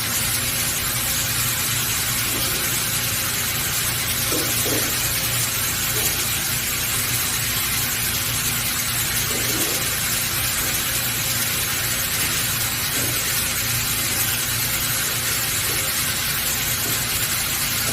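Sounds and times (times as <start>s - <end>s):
welding equipment hiss and hum: 0.0s - 17.9s.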